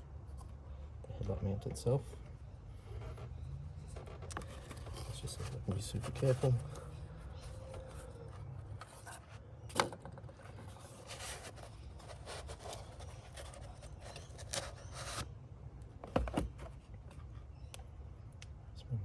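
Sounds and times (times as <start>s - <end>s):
hands rubbing and scraping plastic: 3.0s - 15.3s.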